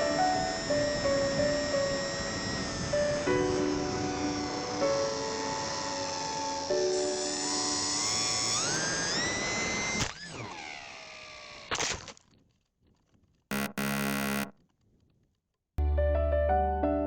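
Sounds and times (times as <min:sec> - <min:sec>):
steady buzzing tone: 0:00.0 - 0:10.0, 0:13.5 - 0:14.6
electric motor and propeller whining: 0:00.0 - 0:12.2, 0:13.5 - 0:14.5.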